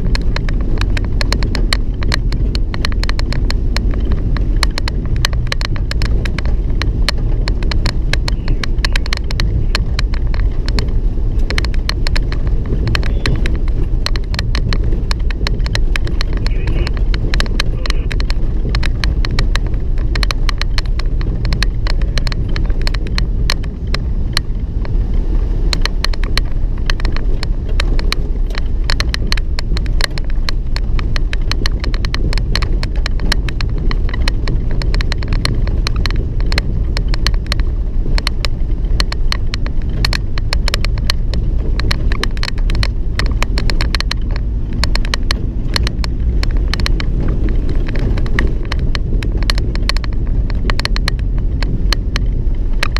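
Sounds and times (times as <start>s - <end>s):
car door squeaking and rattling: 0.0s - 52.9s
engine and road rumble: 0.0s - 52.9s.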